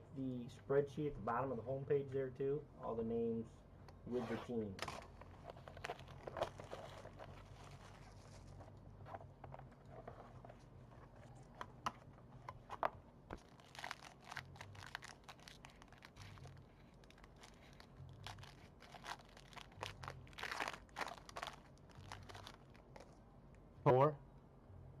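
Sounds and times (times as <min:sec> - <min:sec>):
packaging crinkling and tearing: 0:04.8 - 0:11.6, 0:12.6 - 0:23.2.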